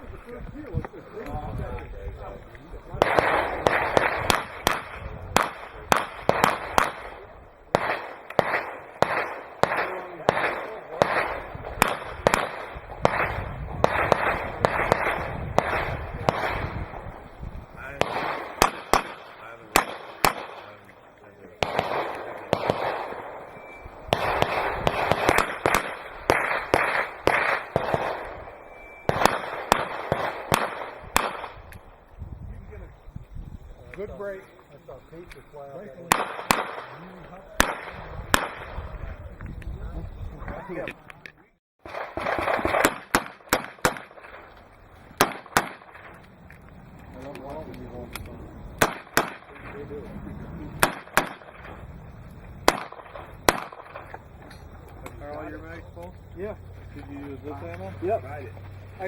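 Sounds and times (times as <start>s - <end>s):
rapid gunshots with echo: 3.0s - 32.0s, 36.1s - 39.0s, 41.8s - 44.5s, 48.8s - 50.0s, 50.6s - 51.9s, 52.6s - 54.1s.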